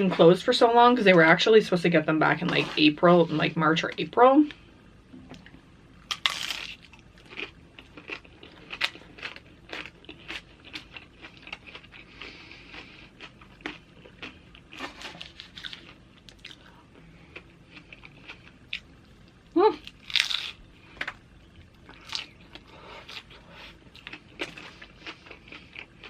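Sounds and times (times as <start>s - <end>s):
chewing crunchy chips: 6.1s - 20.7s, 21.6s - 26.0s.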